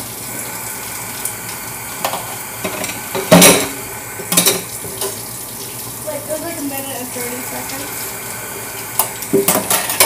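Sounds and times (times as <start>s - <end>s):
tap running into sink: 2.0s - 5.7s, 9.0s - 10.0s
dishes clinking: 2.1s - 5.2s, 9.0s - 10.0s
dishware clattering: 2.7s - 3.7s, 9.4s - 10.0s.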